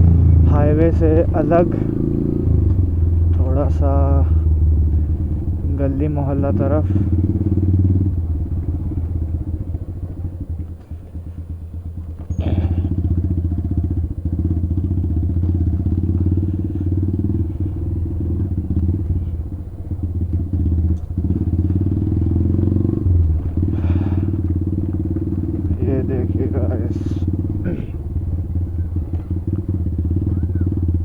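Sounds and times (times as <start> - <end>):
motorcycle engine running: 0.0 - 31.0.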